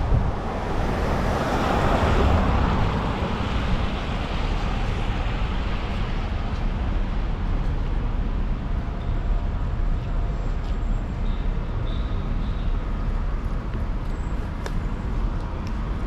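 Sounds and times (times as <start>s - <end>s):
wind buffeting microphone: 0.0s - 7.6s
city street traffic: 0.0s - 16.0s.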